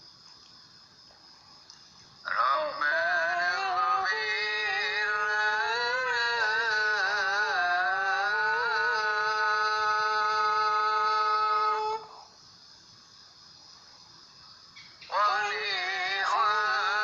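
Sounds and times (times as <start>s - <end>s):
person singing unaccompanied: 2.2s - 12.3s, 15.0s - 17.0s.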